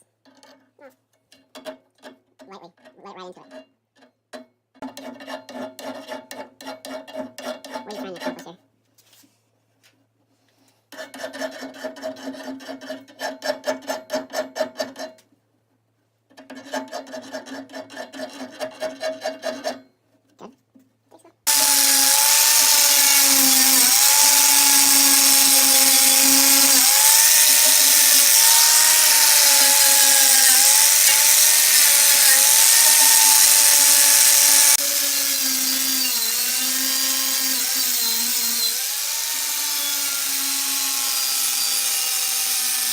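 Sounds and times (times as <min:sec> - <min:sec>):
hand file on steel: 0:04.9 - 0:08.5, 0:10.9 - 0:15.2, 0:16.4 - 0:19.8, 0:21.5 - 0:42.9
electric power tool whining: 0:21.5 - 0:42.9.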